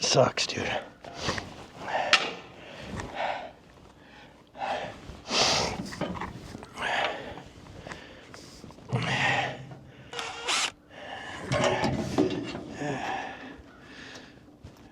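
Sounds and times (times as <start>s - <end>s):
man breathing hard: 1.1s - 6.0s, 6.7s - 14.5s.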